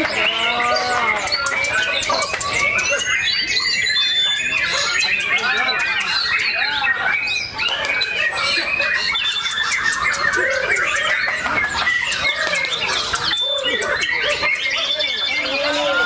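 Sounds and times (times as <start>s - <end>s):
many songbirds singing: 0.0s - 16.0s.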